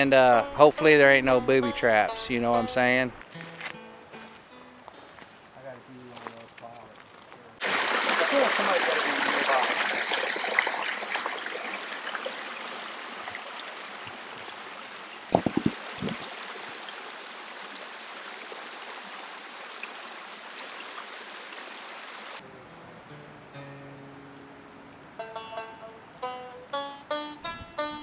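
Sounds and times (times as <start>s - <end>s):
faint music tones: 0.0s - 7.5s, 22.4s - 28.0s
creek running over rocks: 2.8s - 22.4s
loud knocks: 15.3s - 16.2s.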